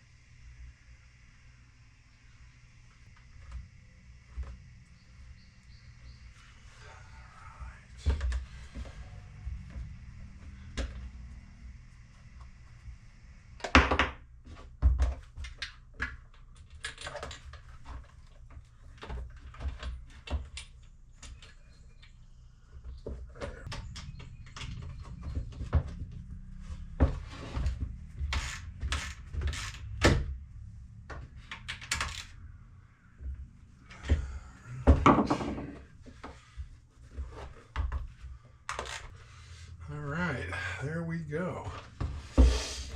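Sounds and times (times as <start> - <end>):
parts and tools clicking and rattling: 15.0 - 21.6.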